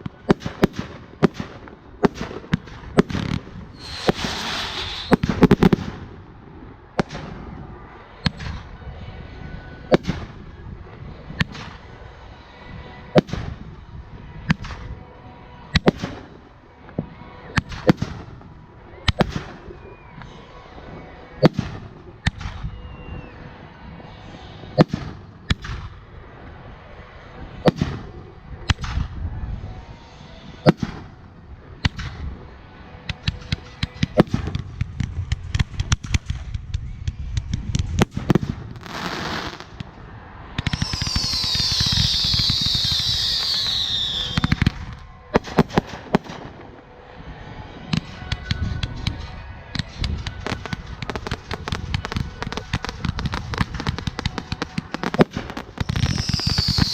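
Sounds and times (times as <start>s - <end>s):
fireworks bangs: 0.0s - 6.2s, 33.1s - 47.0s, 47.9s - 56.9s.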